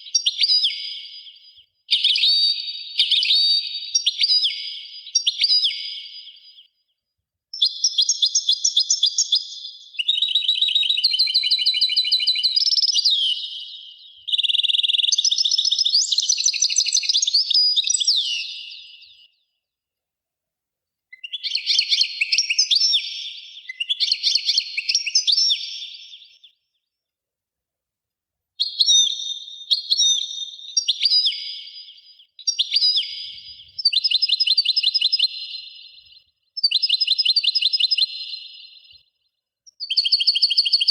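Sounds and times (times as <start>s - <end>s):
songbird trilling and warbling: 10.0s - 19.2s.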